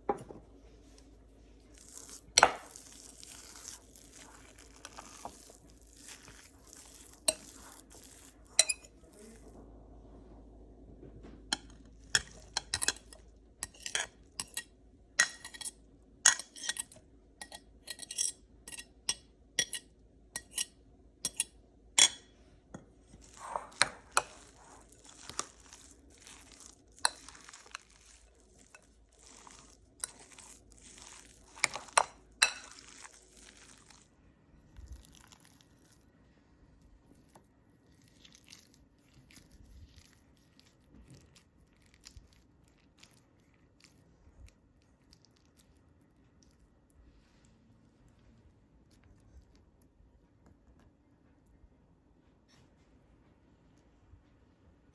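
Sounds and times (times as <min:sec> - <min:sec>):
scraping and crunching: 0:01.6 - 0:09.5, 0:23.0 - 0:34.1.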